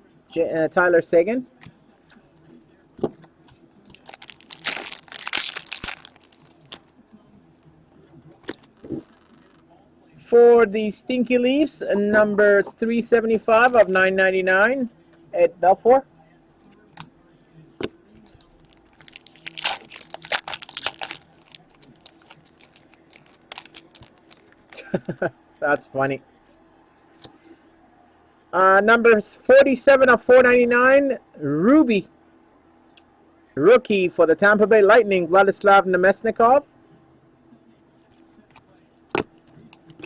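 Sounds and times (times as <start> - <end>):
wrapper crinkling: 3.8 - 7.0, 18.2 - 24.8.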